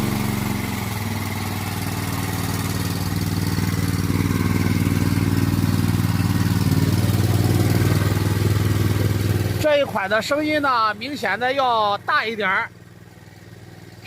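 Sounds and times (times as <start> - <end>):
generator running: 0.0 - 14.0.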